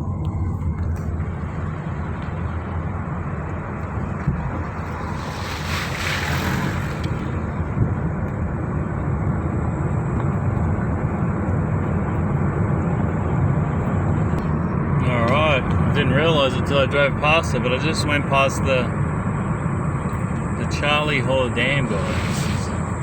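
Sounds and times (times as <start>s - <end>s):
car engine and tyre noise: 0.0s - 23.0s
rushing hiss: 21.7s - 23.0s.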